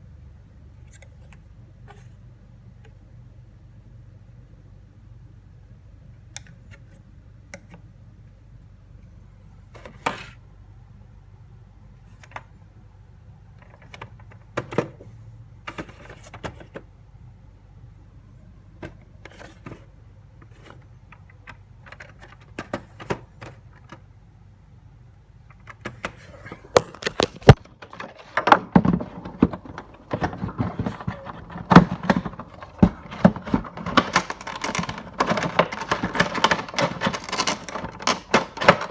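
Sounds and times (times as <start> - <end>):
box packaging clicking and rustling: 15.7 - 16.8, 18.8 - 24.0, 25.6 - 38.9.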